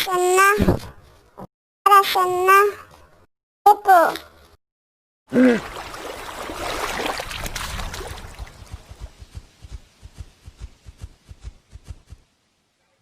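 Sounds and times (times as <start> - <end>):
water splashing: 5.3 - 9.4.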